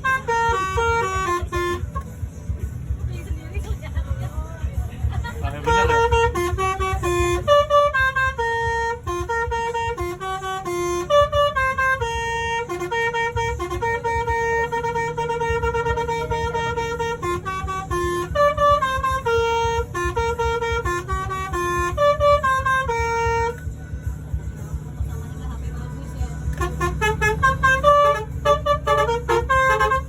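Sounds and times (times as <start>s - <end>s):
musical horn playing a tune: 0.0s - 2.1s, 5.5s - 23.7s, 26.5s - 30.0s.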